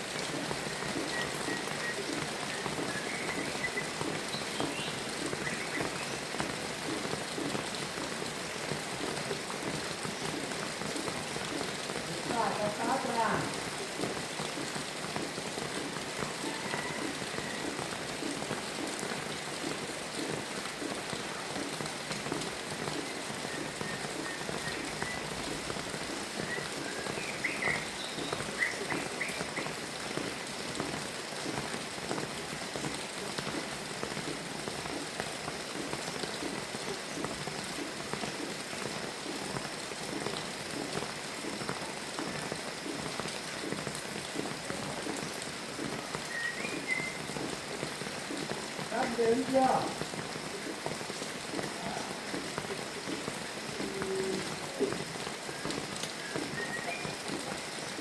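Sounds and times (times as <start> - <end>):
steady rain falling: 0.0 - 58.0
bird chirps: 0.7 - 6.2, 26.3 - 29.7, 46.3 - 47.3, 55.5 - 57.4.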